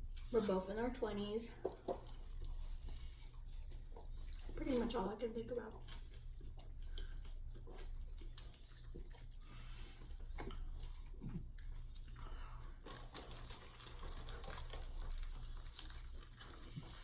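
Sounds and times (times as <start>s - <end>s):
chewing with wet mouth clicks: 1.6s - 17.0s
food crunching: 1.6s - 17.0s.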